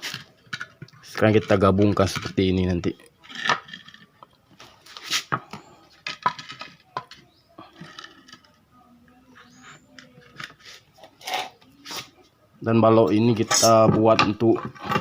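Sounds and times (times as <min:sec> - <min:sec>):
wooden boards knocking: 0:13.5 - 0:15.0.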